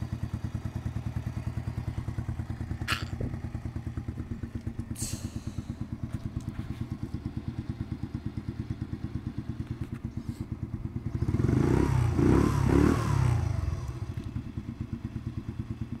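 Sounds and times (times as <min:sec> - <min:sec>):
motorcycle engine idling and revving: 0:00.0 - 0:16.0.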